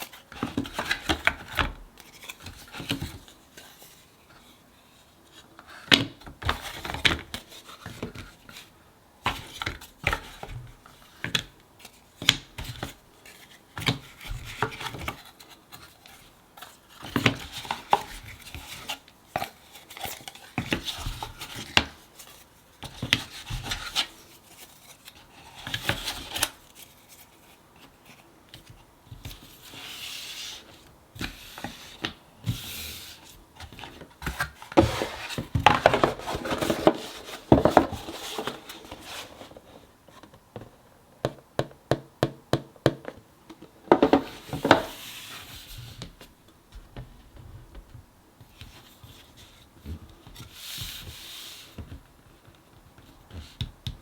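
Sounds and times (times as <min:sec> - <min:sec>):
puzzle pieces sliding and rubbing: 0:34.3 - 0:39.9.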